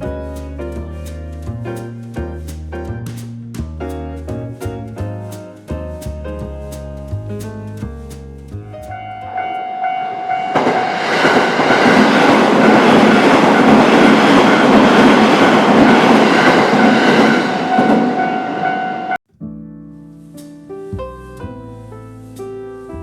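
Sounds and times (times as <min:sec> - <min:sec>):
train wheels clattering on rails: 0:10.4 - 0:18.2
crossing alarm ringing: 0:16.4 - 0:19.2.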